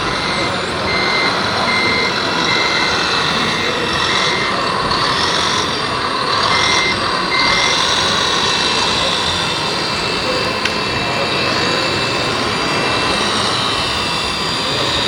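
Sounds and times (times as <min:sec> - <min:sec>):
machine noise with wavering whine: 0:00.0 - 0:15.0
reversing alarm beeping: 0:00.0 - 0:15.0.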